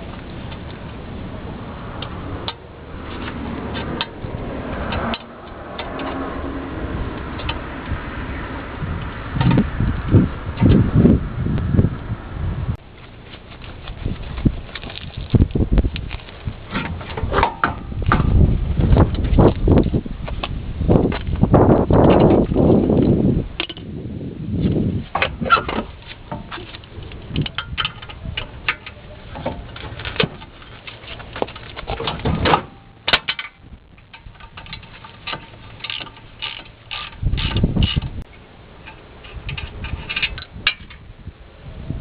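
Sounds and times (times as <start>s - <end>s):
wrench ratcheting: 33.2s - 38.2s.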